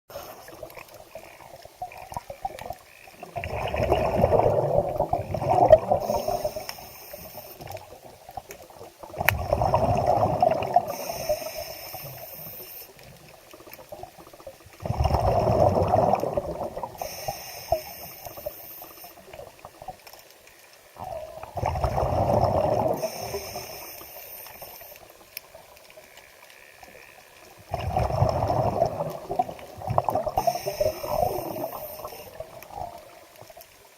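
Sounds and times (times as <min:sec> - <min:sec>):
water gurgling and bubbling: 0:00.1 - 0:06.6, 0:07.8 - 0:11.6, 0:13.8 - 0:17.1, 0:21.0 - 0:23.7, 0:27.5 - 0:33.6
short high hiss: 0:17.0 - 0:19.2, 0:23.0 - 0:25.0.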